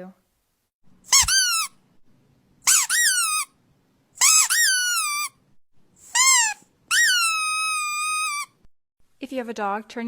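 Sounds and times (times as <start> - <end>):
squeaky toy squeaking: 1.1 - 1.8, 2.6 - 3.6, 4.2 - 5.4, 6.0 - 8.6.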